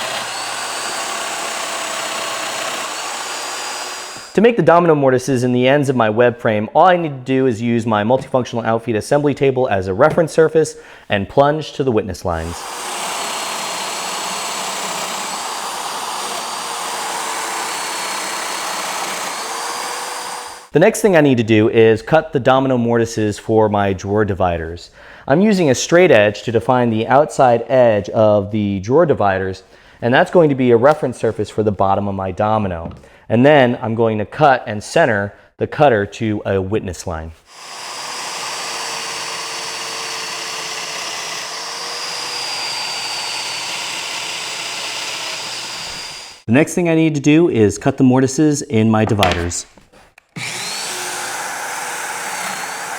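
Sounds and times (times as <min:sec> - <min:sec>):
joiner motor running with whine: 0:00.0 - 0:04.4, 0:12.5 - 0:20.7, 0:37.6 - 0:46.4
power tool whirring: 0:00.0 - 0:04.4, 0:12.4 - 0:20.7, 0:37.5 - 0:46.5, 0:50.2 - 0:52.9.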